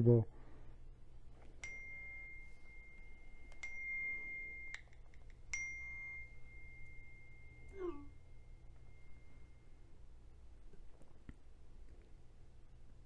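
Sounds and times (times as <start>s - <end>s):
high ringing tone: 1.4s - 10.6s.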